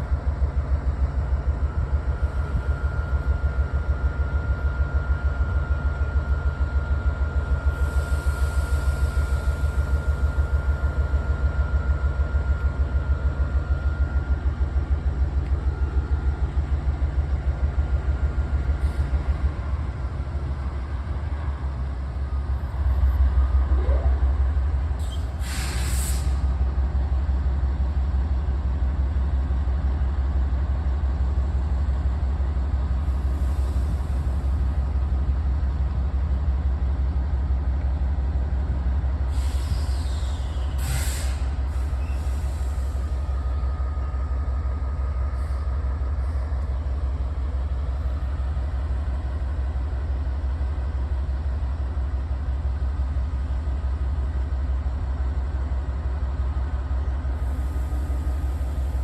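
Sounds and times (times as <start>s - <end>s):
low rumble of moving train: 0.0s - 59.0s
short sharp hiss: 25.0s - 26.4s, 39.4s - 43.0s.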